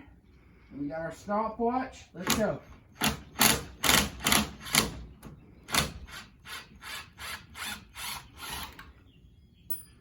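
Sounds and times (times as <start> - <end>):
impact driver rattling: 2.2 - 6.1.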